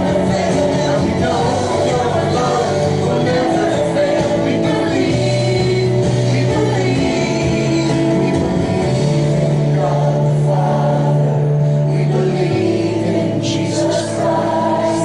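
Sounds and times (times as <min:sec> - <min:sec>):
held bass notes: 0:00.0 - 0:15.0
voices singing worship song: 0:00.0 - 0:15.0.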